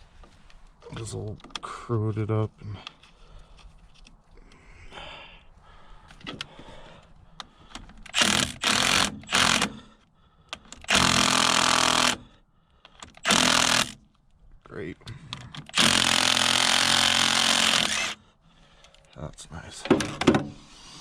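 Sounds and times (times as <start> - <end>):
handheld power tool bursts: 8.1 - 9.8, 10.6 - 12.2, 12.9 - 14.1, 15.5 - 18.2.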